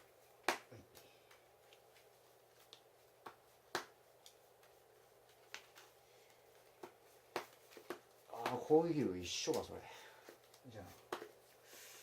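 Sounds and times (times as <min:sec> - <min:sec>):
cards tapping on table: 0:06.8 - 0:08.6, 0:11.0 - 0:11.4.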